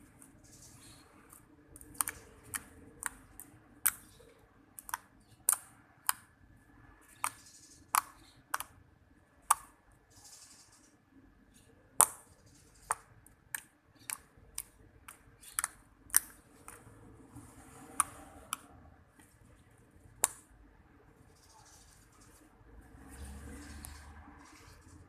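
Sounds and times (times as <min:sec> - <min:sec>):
slime popping and clicking: 0:01.8 - 0:04.1, 0:04.8 - 0:06.2, 0:12.9 - 0:16.8, 0:17.9 - 0:18.6.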